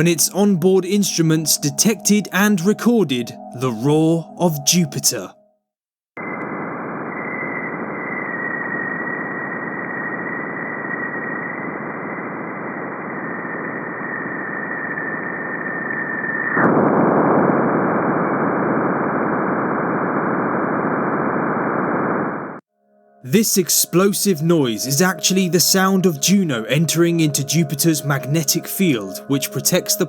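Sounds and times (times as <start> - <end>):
thin high sinking tone: 22.8 - 30.0.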